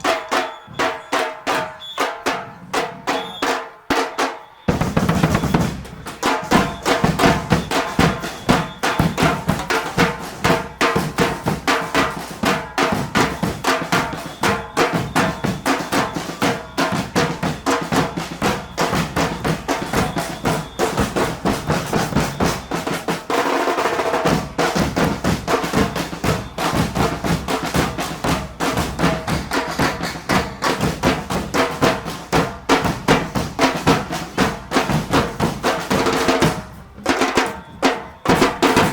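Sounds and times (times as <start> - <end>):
percussion band drumming: 0.0 - 38.9.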